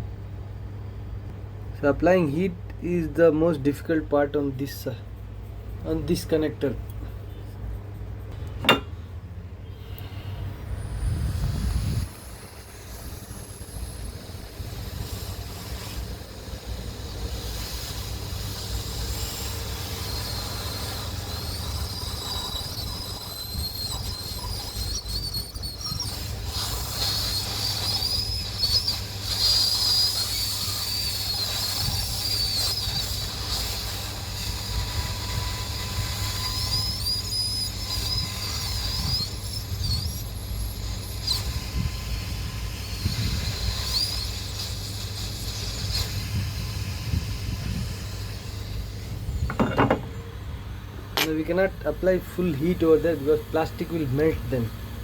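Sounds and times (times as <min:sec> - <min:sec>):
hot-air gun hissing: 0:11.2 - 0:50.2.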